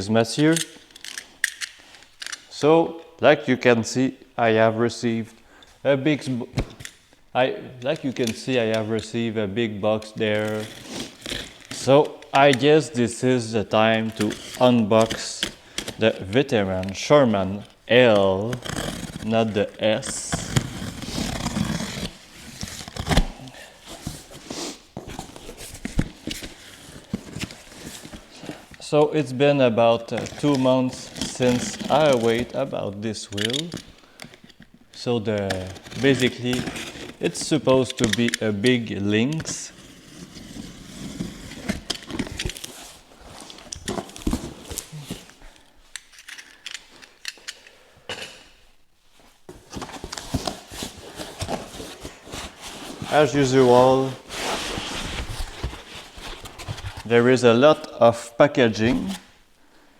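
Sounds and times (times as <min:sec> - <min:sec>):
tape tearing: 0:10.1 - 0:12.7, 0:13.7 - 0:28.8, 0:29.8 - 0:47.7, 0:49.5 - 0:57.1
cardboard and packaging rustling: 0:10.1 - 0:12.9, 0:13.7 - 0:28.9, 0:29.7 - 0:47.6, 0:49.1 - 0:57.9
cardboard box being handled: 0:40.3 - 0:45.3, 0:49.5 - 0:57.1.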